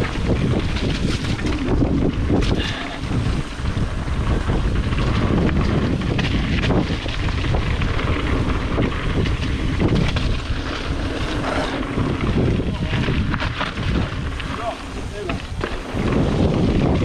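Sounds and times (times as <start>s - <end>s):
tyre rumble: 0.0s - 16.5s
bike rattling and knocking: 0.0s - 17.0s
wind buffeting microphone: 0.0s - 17.0s.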